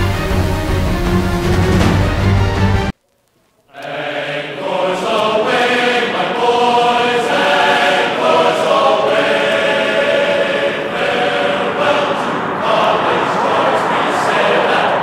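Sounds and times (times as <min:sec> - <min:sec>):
choir singing: 0:03.7 - 0:15.0.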